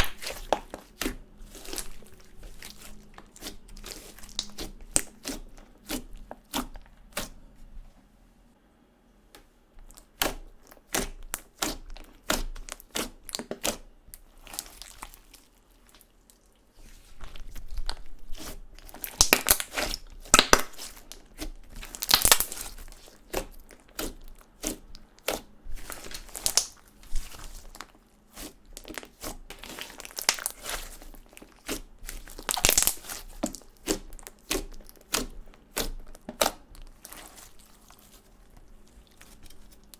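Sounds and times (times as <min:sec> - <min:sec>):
slime squeezed with sticky pops: 0:00.0 - 0:07.4, 0:17.4 - 0:38.0.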